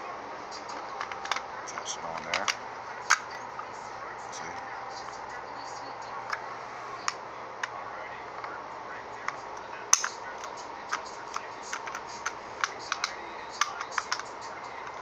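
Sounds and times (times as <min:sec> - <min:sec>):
air pistol parts clicking: 0:01.0 - 0:03.4, 0:09.2 - 0:15.0.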